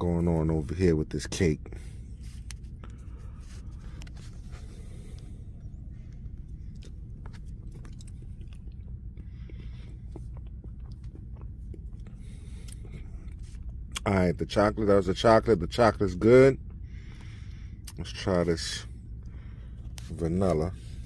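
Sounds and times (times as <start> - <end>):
steady low hum: 0.0 - 21.0
person biting and chewing cake: 1.9 - 14.1.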